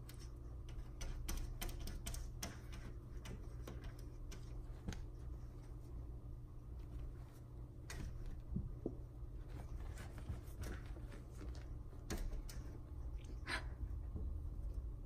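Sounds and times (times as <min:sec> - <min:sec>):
cats scratching window glass: 0:00.0 - 0:05.9.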